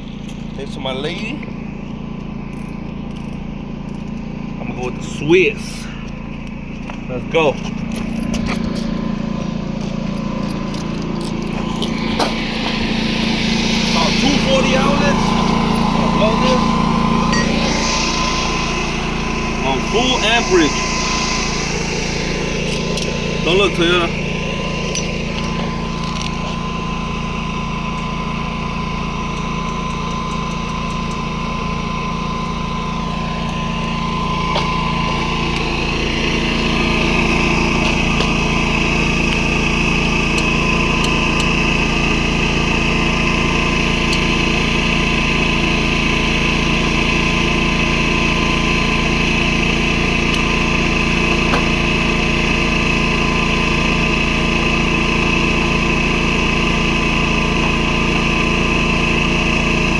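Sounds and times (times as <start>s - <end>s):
generator engine running: 0.0s - 59.9s.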